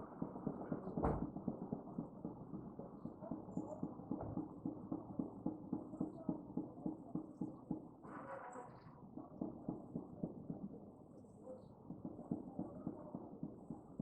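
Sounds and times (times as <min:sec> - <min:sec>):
rapid low tapping: 0:09.0 - 0:14.0.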